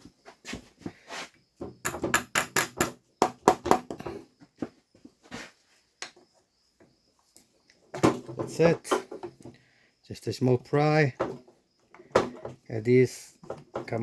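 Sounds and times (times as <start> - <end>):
metal tools clinking on steel: 8.0 - 9.5.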